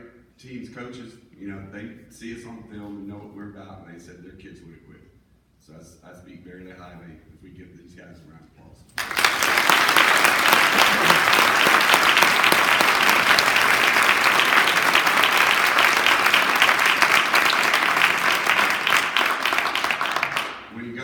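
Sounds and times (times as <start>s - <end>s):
audience applauding: 9.0s - 20.8s.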